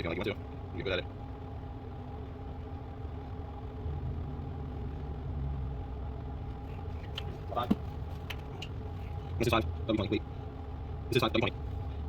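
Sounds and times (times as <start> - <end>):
low engine hum: 0.0 - 12.0.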